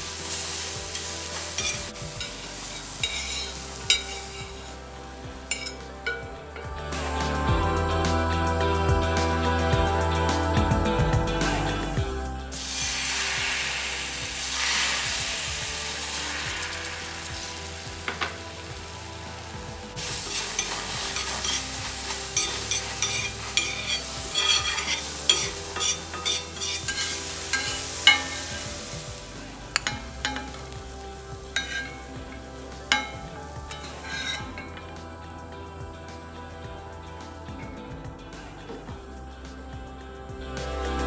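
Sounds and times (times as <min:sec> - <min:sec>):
egg sizzling in hot oil: 0:00.0 - 0:06.4, 0:12.5 - 0:35.3
spatula scraping a pan: 0:00.1 - 0:06.6, 0:14.4 - 0:35.2.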